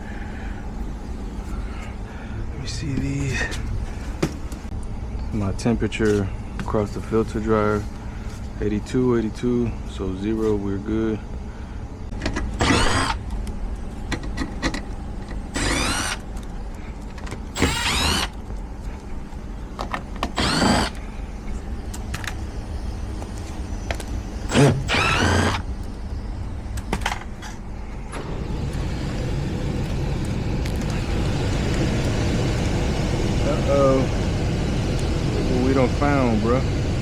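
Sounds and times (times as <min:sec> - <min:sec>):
hvac equipment hum: 0:00.0 - 0:37.0
cordless drill whining: 0:12.6 - 0:13.2, 0:15.4 - 0:16.3, 0:17.5 - 0:18.4, 0:20.3 - 0:21.0, 0:24.4 - 0:25.7.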